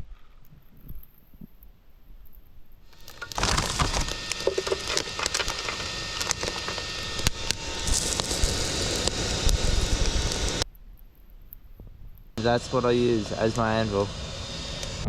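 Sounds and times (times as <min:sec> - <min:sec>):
fire crackling and popping: 0:00.0 - 0:14.1
blower air rushing: 0:02.9 - 0:10.6, 0:12.4 - 0:15.0.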